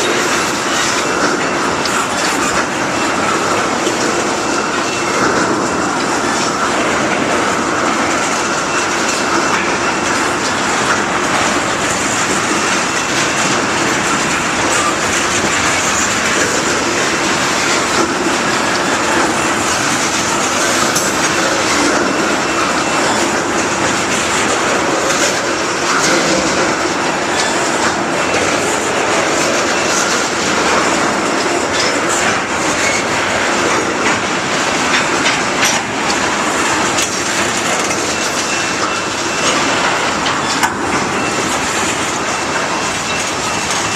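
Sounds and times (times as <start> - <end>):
train wheels clattering over rails: 0.0 - 43.9.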